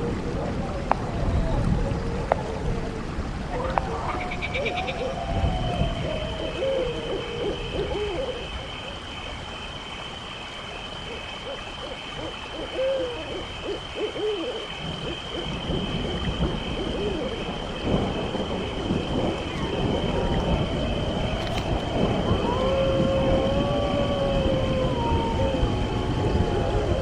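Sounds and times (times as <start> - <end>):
owl hooting: 3.6 - 9.1, 11.0 - 17.5.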